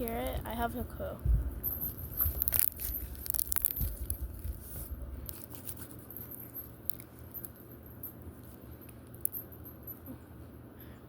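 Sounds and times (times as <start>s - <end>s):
low microphone rumble: 0.0s - 5.4s.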